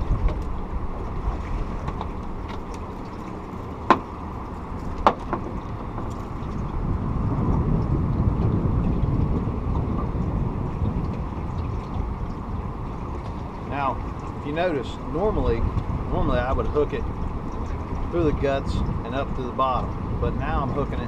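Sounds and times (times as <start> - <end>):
boat motor running: 0.0 - 21.0
water: 0.0 - 21.0.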